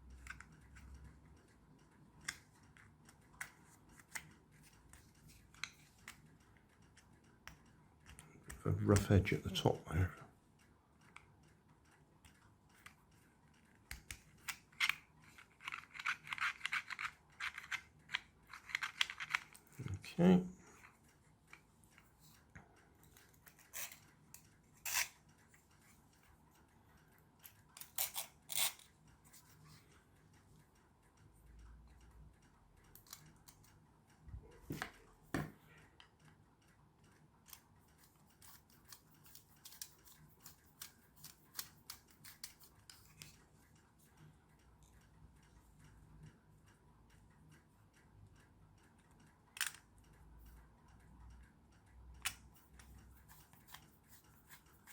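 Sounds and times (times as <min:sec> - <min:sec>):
hand tool clicking and scraping plastic: 0:13.9 - 0:19.8, 0:37.5 - 0:43.4.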